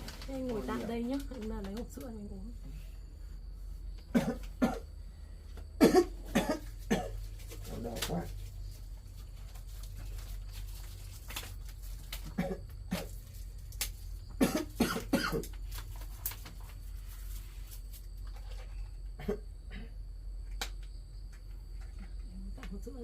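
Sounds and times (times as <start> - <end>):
man coughing: 4.1 - 4.8, 5.8 - 7.1, 14.4 - 15.4.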